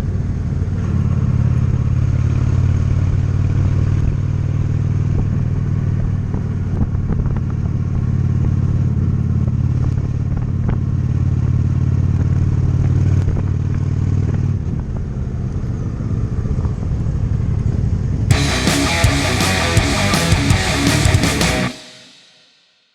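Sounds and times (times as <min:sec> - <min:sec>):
motorcycle engine running: 0:18.3 - 0:22.2
rock music with electric guitar: 0:18.3 - 0:22.4.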